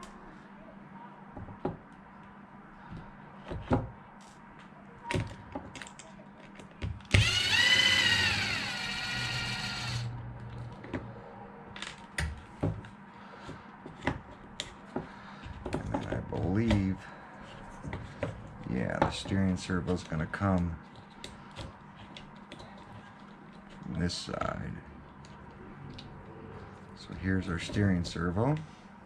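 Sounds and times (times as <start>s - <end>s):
electric driver whining: 7.1s - 10.2s.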